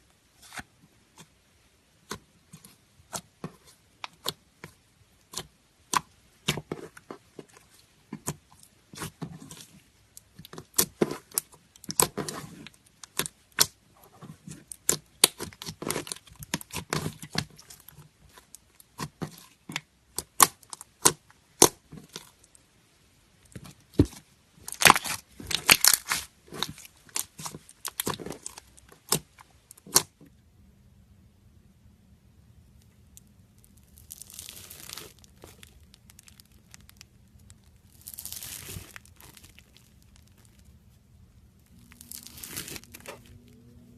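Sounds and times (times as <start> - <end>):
slime clicking and crackling: 14.6 - 18.0, 24.7 - 30.1, 33.1 - 40.7, 41.7 - 43.3.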